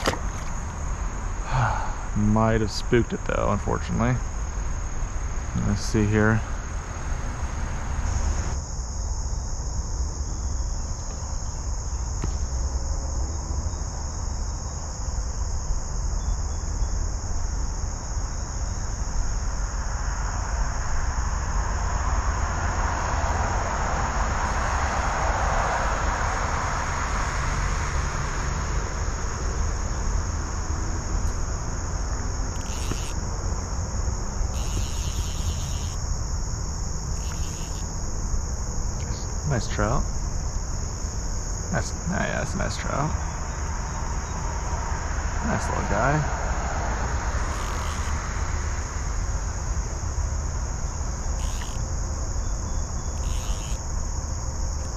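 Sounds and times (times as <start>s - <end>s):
insect chorus: 0.0s - 54.9s.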